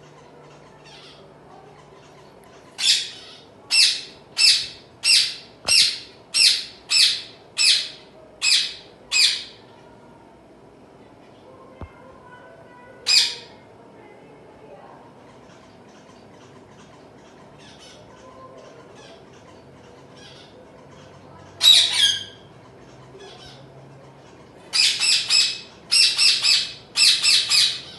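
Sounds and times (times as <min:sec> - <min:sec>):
finch chicks chirping: 0:00.8 - 0:09.6, 0:24.7 - 0:27.9.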